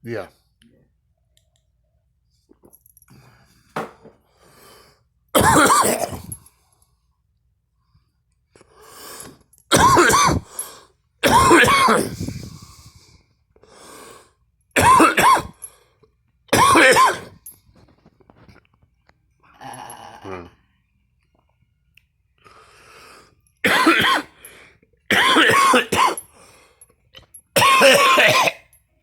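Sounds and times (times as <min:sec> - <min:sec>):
person coughing and gagging: 0:05.4 - 0:06.4, 0:09.7 - 0:10.6, 0:11.2 - 0:12.6, 0:14.8 - 0:15.6, 0:16.5 - 0:17.4, 0:23.6 - 0:24.4, 0:25.1 - 0:26.3, 0:27.6 - 0:28.7.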